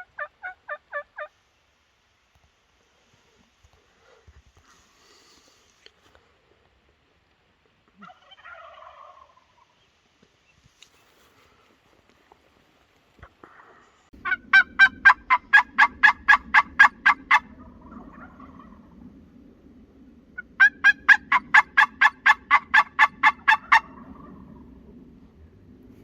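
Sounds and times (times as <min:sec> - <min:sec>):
wild turkey yelping: 0:00.0 - 0:01.3, 0:08.0 - 0:09.7, 0:14.2 - 0:19.0, 0:20.4 - 0:24.7
low steady noise: 0:00.0 - 0:26.0.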